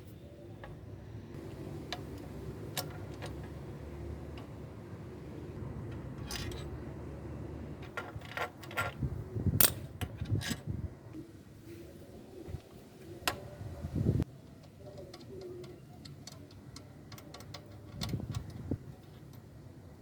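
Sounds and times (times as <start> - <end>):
metal parts clicking: 5.9 - 6.8.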